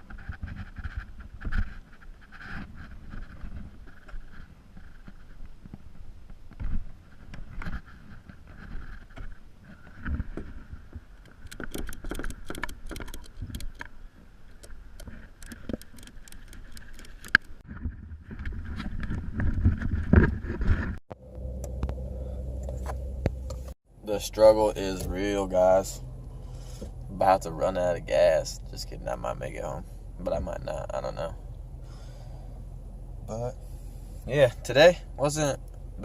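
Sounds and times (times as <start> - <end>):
gear clicking against kayak hull: 7.3 - 20.9
low rumble: 18.0 - 36.0.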